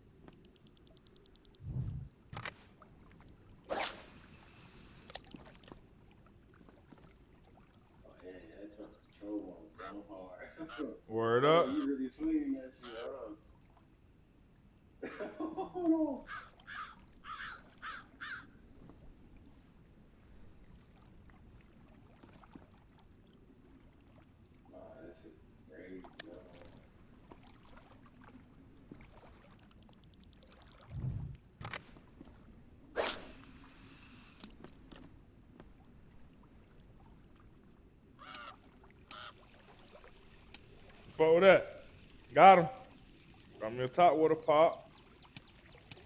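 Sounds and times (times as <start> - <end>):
click: 0.3 - 1.6, 29.6 - 30.9, 38.3 - 46.0
fishing reel ticking: 0.4 - 1.6, 29.6 - 30.9, 38.3 - 46.0
faint low rumble: 1.6 - 2.1
sudden hiss: 3.9 - 5.2.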